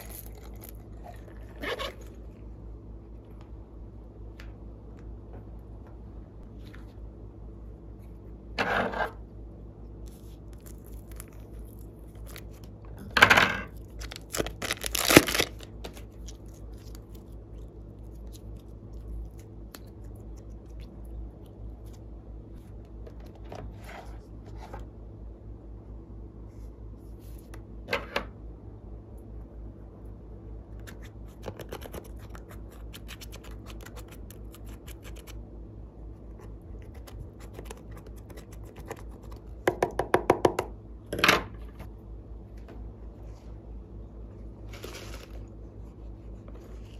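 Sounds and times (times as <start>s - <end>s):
steady low hum: 0.0s - 46.9s
sticky slime crackles and tearing: 13.7s - 20.9s.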